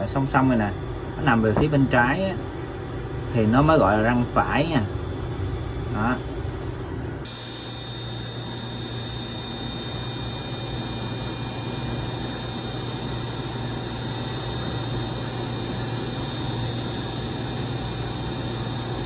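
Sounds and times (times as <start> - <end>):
lathe machine hum: 0.0 - 19.0
thin high whines: 7.2 - 18.9.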